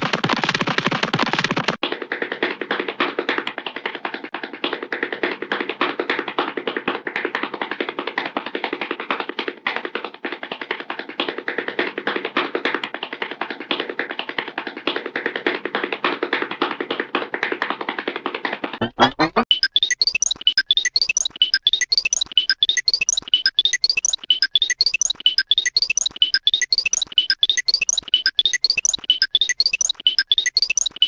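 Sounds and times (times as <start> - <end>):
rapid tapping: 17.8 - 31.0.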